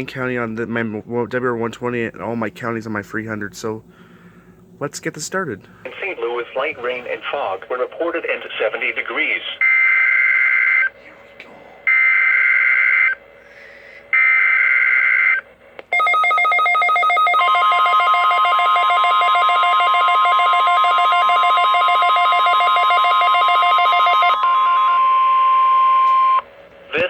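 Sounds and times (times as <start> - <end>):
rapid pulsing alarm beeps: 14.2 - 26.4
steady warning tone: 14.2 - 26.5.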